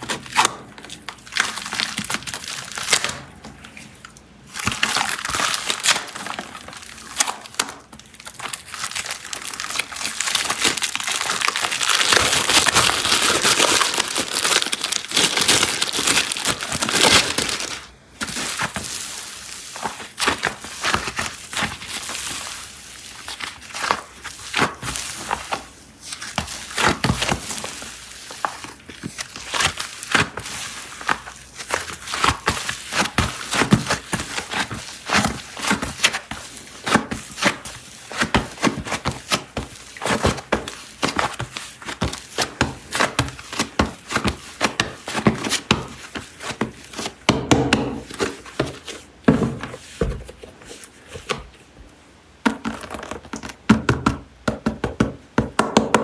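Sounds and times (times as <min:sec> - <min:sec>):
plastic packaging crinkling: 0:00.0 - 0:51.6.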